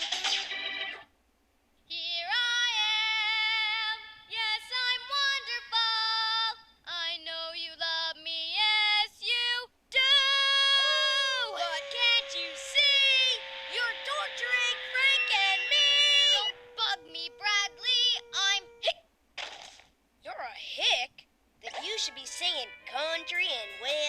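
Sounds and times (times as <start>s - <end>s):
girl singing unaccompanied: 1.8s - 19.0s, 21.6s - 24.0s
music: 21.7s - 24.0s.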